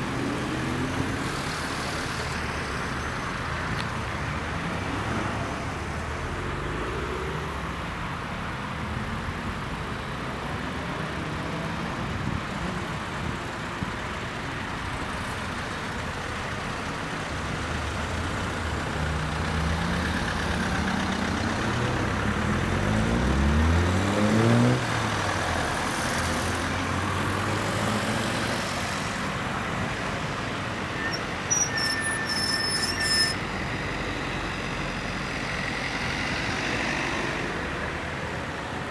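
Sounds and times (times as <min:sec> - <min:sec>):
cars driving by: 0:00.0 - 0:38.9.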